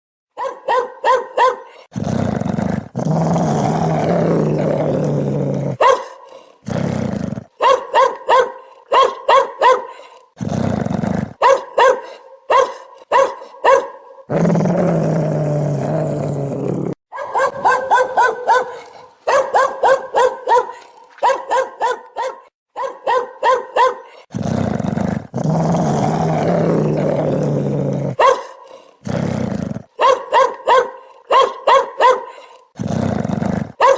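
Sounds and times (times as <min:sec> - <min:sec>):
dog barking ringtone: 0:00.4 - 0:01.7, 0:07.6 - 0:09.9, 0:17.1 - 0:18.7, 0:19.3 - 0:24.1, 0:30.0 - 0:32.3.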